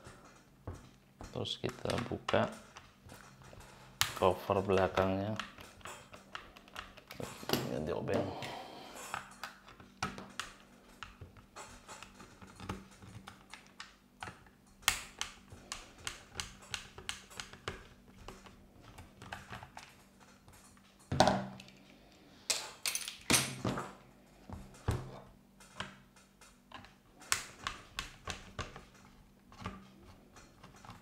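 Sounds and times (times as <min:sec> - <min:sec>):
screwdriver clicks and taps: 0:12.6 - 0:19.9
plastic and metal parts knocking: 0:24.5 - 0:31.0.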